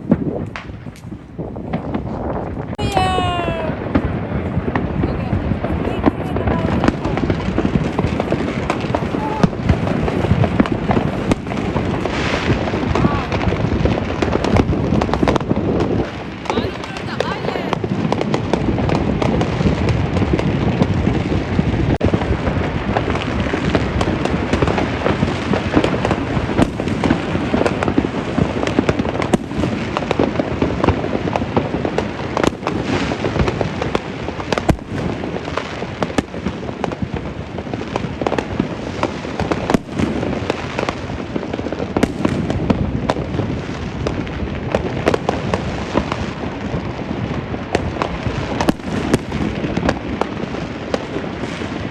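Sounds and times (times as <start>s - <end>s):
firecracker bangs: 0.0s - 51.9s
fireworks crackling: 0.0s - 51.9s.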